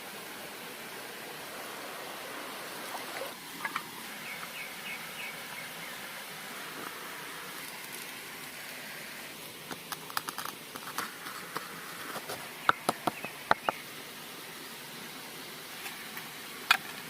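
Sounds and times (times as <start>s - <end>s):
steady outdoor hiss: 0.0s - 17.0s.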